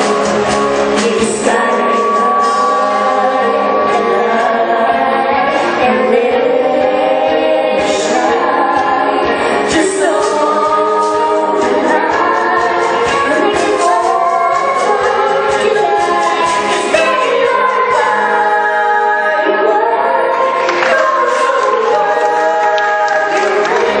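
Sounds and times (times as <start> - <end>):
choir singing in harmony: 0.0 - 24.0.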